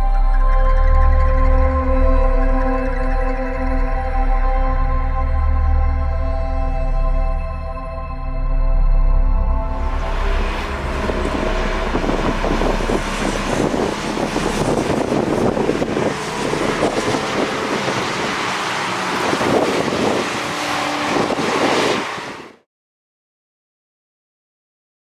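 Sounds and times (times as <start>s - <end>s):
car engine: 9.7s - 22.6s
road noise: 9.7s - 22.6s
wind buffeting microphone: 9.7s - 22.6s.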